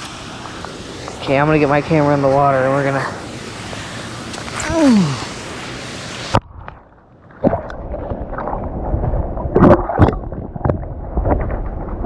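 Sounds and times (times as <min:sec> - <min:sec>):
water splash: 0:04.4 - 0:12.0.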